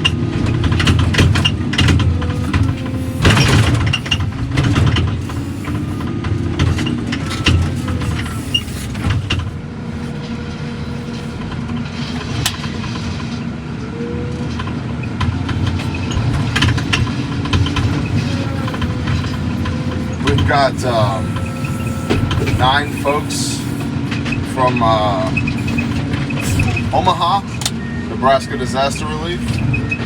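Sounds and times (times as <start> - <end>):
knocks and rattles: 0.0 - 13.2, 14.5 - 23.1
vehicle engine running: 0.0 - 30.0.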